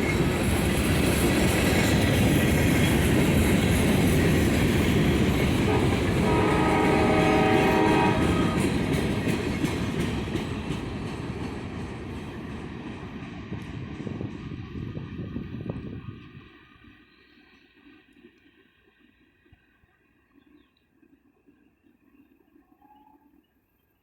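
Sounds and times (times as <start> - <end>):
freight train wheels rumbling: 0.0 - 17.0
train horn: 5.5 - 8.8.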